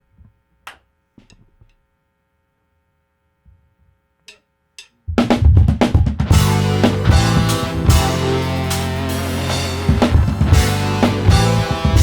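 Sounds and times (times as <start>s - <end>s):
faint electrical hum: 0.0s - 5.1s
rock band playing: 6.2s - 12.0s.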